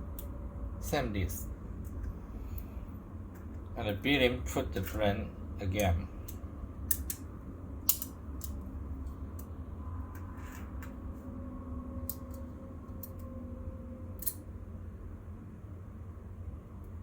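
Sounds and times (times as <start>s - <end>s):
low steady hum: 0.0s - 17.0s
metal knife parts clicking: 5.7s - 7.2s, 7.8s - 8.6s, 12.0s - 13.3s, 14.2s - 14.4s.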